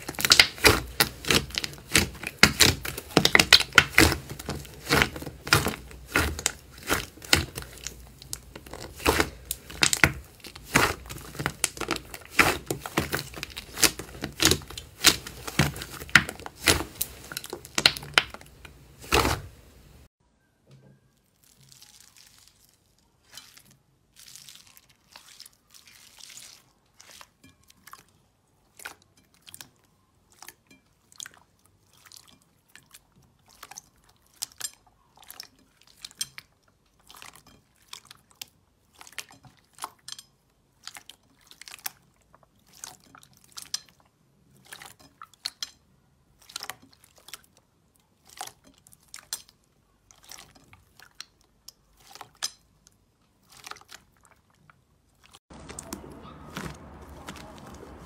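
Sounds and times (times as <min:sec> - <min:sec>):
slime crackling and popping: 0:00.0 - 0:20.1, 0:21.2 - 0:27.8.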